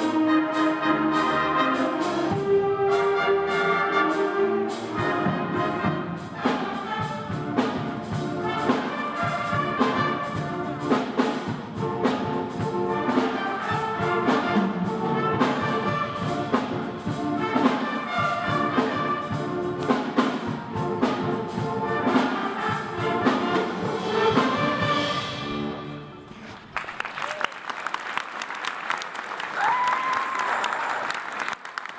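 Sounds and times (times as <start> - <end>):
concert band playing: 0.0 - 27.4
percussion hits: 4.9 - 25.7.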